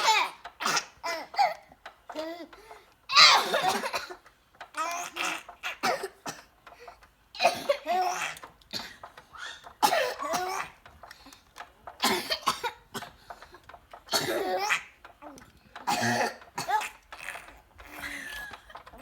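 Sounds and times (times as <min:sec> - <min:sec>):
boy coughing: 0:00.0 - 0:01.6, 0:03.1 - 0:04.2, 0:05.1 - 0:06.5, 0:07.4 - 0:10.8, 0:12.0 - 0:13.2, 0:14.1 - 0:14.8, 0:15.9 - 0:17.4
baby laughing: 0:07.4 - 0:08.4, 0:14.2 - 0:14.9.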